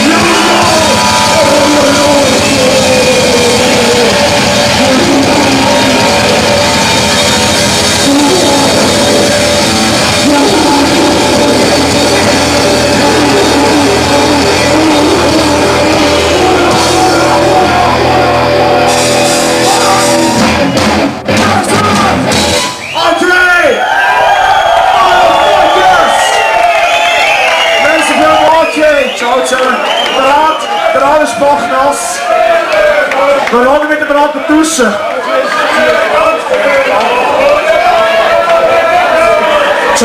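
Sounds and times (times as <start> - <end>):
drum kit: 0.0 - 23.0
heavy metal band playing live: 0.0 - 23.0.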